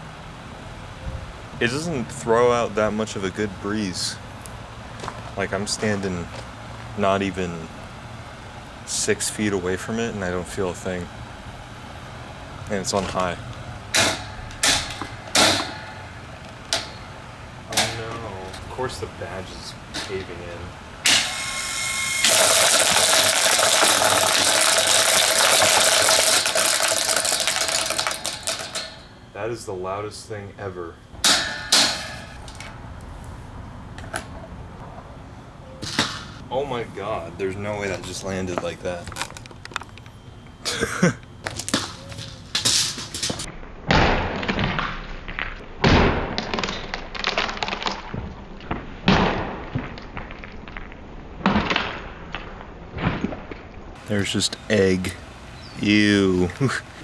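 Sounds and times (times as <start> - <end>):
fan blades clattering on grille: 1.5 - 29.5, 31.0 - 33.4, 40.7 - 43.5, 54.0 - 57.0
heavy thuds against fan: 13.9 - 21.3.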